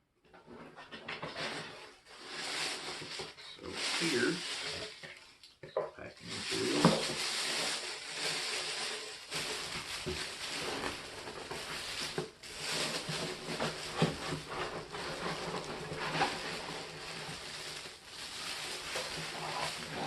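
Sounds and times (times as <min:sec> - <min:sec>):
packing materials rustling: 0:01.3 - 0:05.4, 0:06.2 - 0:20.0.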